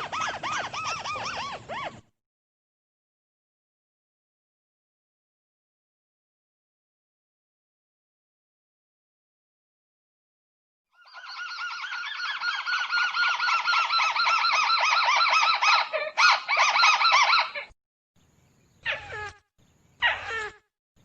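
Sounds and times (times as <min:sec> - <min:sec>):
bird chattering call: 0:00.0 - 0:01.9, 0:11.0 - 0:17.6.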